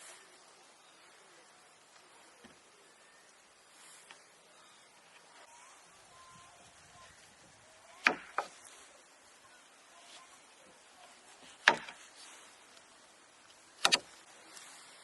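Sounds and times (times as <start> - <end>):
sharp knocks: 11.6 - 12.0.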